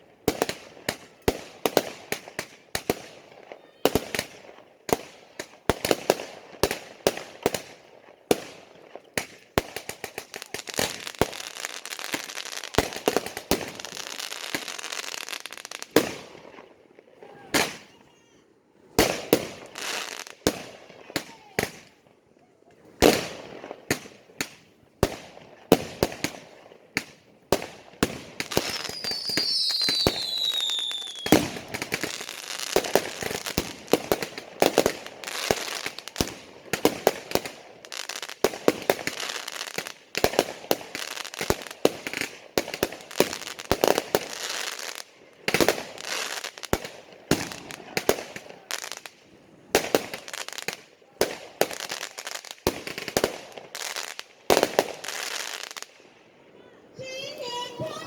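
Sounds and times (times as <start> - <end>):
fireworks crackling: 0.0 - 18.3, 18.9 - 22.0, 22.9 - 56.2, 57.0 - 58.0
whistling firework: 17.2 - 18.4, 28.0 - 46.5
fireworks banging: 27.0 - 49.1, 57.0 - 58.0.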